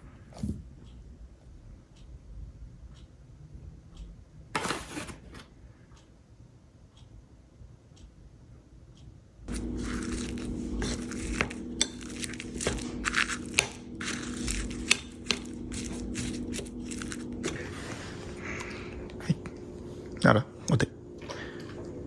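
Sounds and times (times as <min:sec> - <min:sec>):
dishes and utensils scraping: 0:09.5 - 0:18.8
electric appliance hum: 0:09.5 - 0:22.0.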